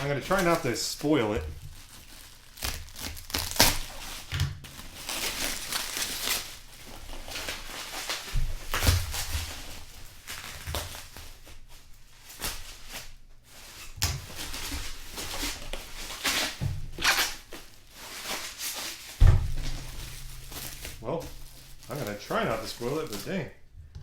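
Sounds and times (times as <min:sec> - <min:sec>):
packaging crinkling and tearing: 0:00.0 - 0:23.5
sharp knock: 0:19.2 - 0:23.4.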